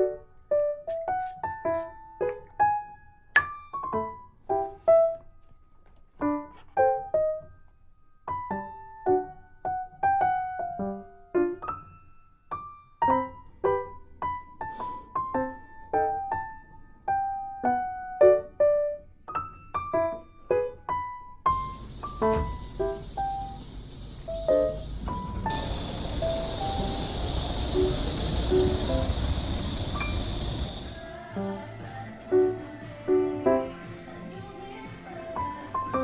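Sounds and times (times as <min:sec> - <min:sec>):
solo piano melody: 0:06.2 - 0:14.6, 0:15.2 - 0:31.6.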